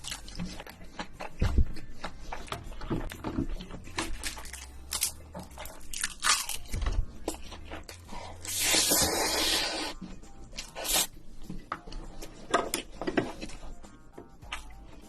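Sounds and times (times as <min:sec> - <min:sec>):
crunching and wet chewing: 0:00.0 - 0:15.0.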